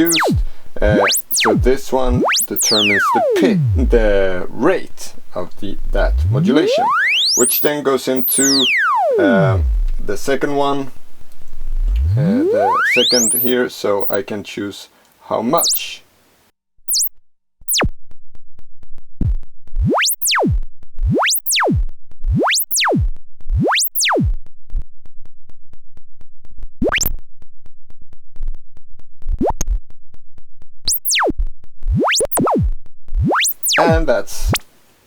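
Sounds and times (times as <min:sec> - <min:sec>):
synthesizer tone sweeping: 0:00.0 - 0:14.2, 0:15.6 - 0:15.8, 0:16.9 - 0:17.1, 0:17.7 - 0:17.9, 0:19.8 - 0:23.0, 0:23.6 - 0:24.3, 0:30.9 - 0:31.3, 0:31.9 - 0:34.6.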